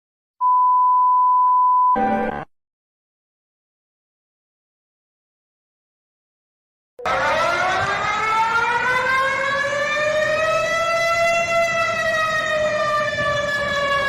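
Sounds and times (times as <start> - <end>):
warning siren wailing: 7.0 - 14.0.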